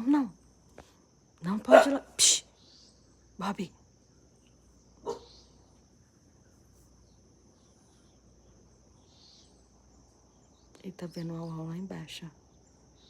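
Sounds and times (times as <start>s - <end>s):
crickets chirring: 0.0s - 13.0s
dog barking softly: 1.7s - 2.2s, 5.0s - 5.4s.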